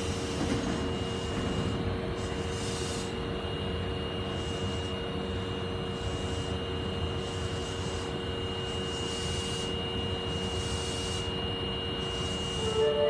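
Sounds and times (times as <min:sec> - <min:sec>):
train hiss: 0:00.0 - 0:03.3, 0:12.0 - 0:13.0
electrical hum: 0:00.0 - 0:13.0
high whine: 0:00.0 - 0:13.0.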